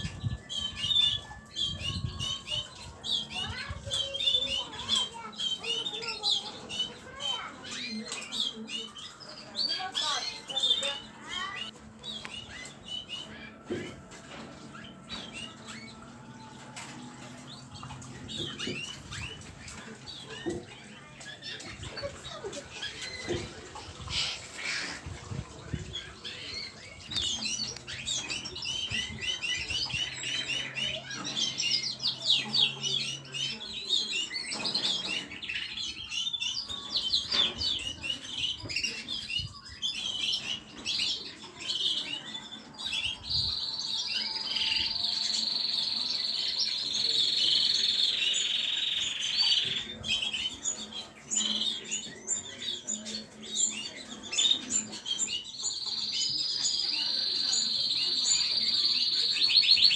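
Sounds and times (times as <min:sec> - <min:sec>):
cage birds chirping: 0:00.0 - 0:59.9
bird singing high trill: 0:26.2 - 0:52.6.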